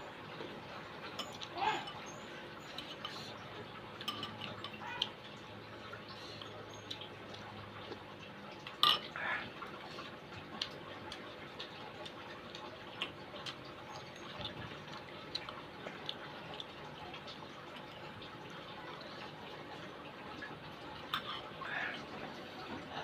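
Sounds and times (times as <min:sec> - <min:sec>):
utensil clacking in a bowl: 0:01.0 - 0:03.3, 0:04.0 - 0:05.1.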